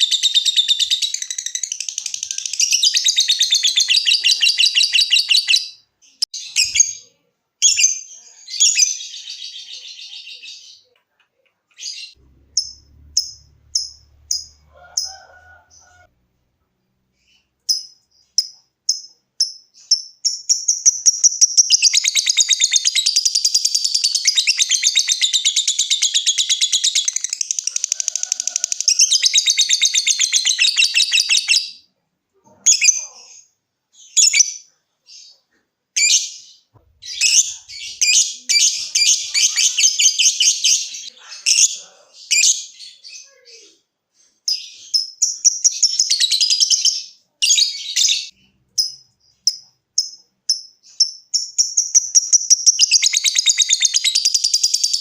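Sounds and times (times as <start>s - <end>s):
lovebird chattering trill: 0.0s - 5.8s, 12.5s - 15.1s, 37.0s - 42.6s
lovebird sharp chirps: 0.0s - 7.0s, 11.8s - 15.1s, 17.2s - 31.8s, 44.5s - 55.0s.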